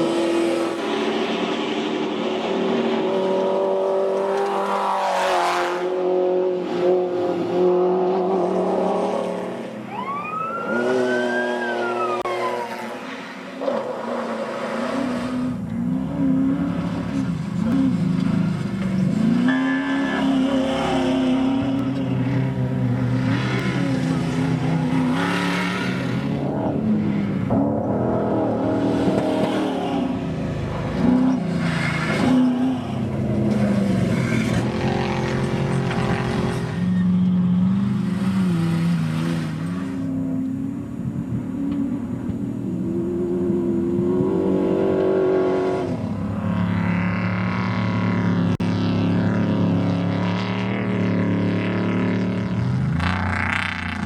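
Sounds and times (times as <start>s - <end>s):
race truck engines revving: 0.0s - 54.0s
trucks rushing past: 0.0s - 54.0s.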